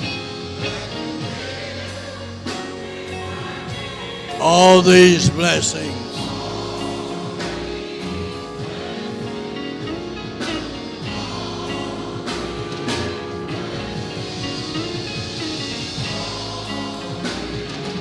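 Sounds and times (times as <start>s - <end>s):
church band music: 4.3s - 17.8s
keyboard chords: 4.4s - 6.6s.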